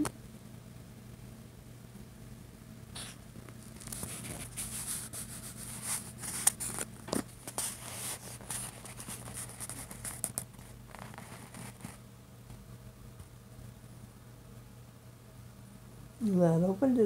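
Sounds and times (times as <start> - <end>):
cat grooming fur: 3.0 - 6.7, 7.3 - 12.0.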